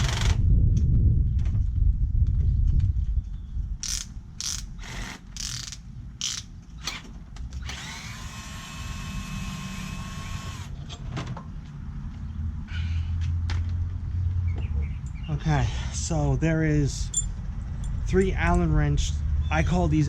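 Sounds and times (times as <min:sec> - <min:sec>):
metal tools clicking: 0:03.8 - 0:07.0, 0:17.0 - 0:18.7.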